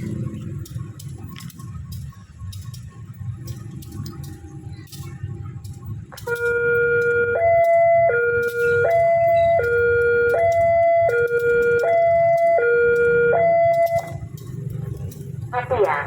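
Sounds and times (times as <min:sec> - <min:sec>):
two-tone level crossing alarm: 0:06.2 - 0:14.4.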